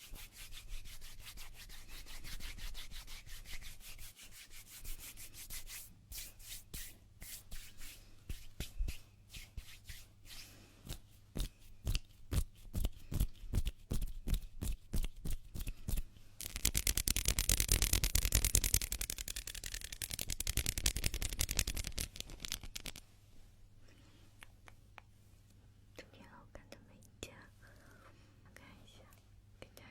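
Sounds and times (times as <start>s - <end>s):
hands rubbing together: 0.0s - 23.0s.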